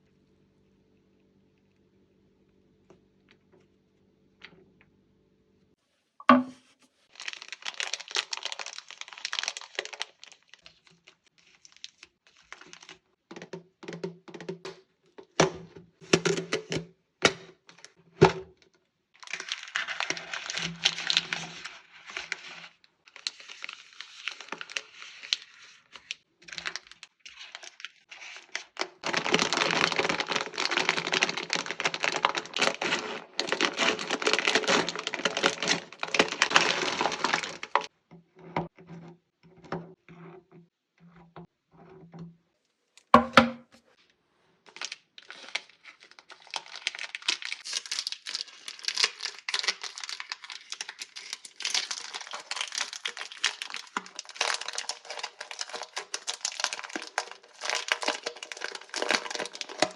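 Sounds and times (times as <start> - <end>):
plastic wrappers crinkling: 7.1 - 13.1, 19.2 - 37.9, 44.7 - 59.9.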